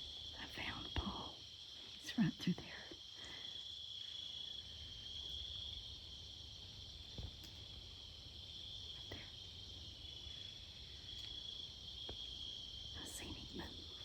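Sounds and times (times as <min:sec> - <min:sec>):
insects buzzing: 0:00.0 - 0:14.0
faint small ticks: 0:07.2 - 0:07.8, 0:11.0 - 0:12.3.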